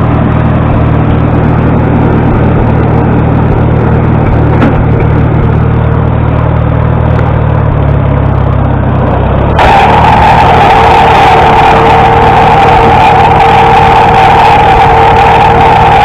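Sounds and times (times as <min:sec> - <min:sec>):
tractor engine idling: 0:00.0 - 0:16.0
bright noise with high tone: 0:09.6 - 0:16.0.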